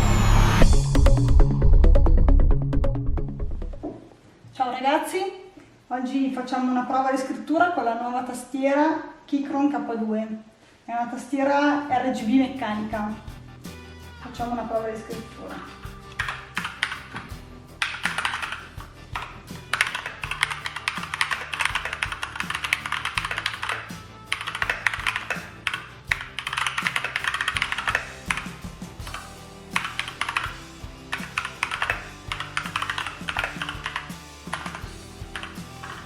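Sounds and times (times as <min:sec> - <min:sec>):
mechanical keyboard typing: 0:16.2 - 0:17.2, 0:17.8 - 0:28.5, 0:29.8 - 0:34.8, 0:35.4 - 0:36.0.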